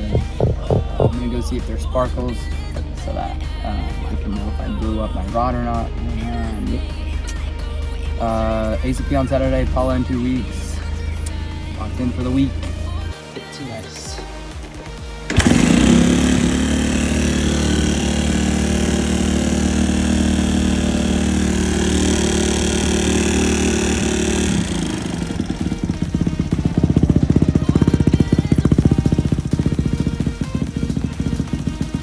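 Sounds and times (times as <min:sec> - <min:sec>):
dirt bike engine revving: 0:00.0 - 0:32.0.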